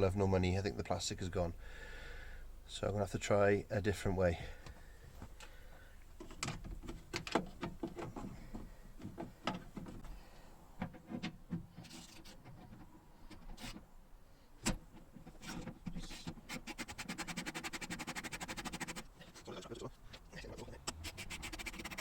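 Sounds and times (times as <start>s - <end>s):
tools and parts clicking and knocking: 6.2s - 10.0s.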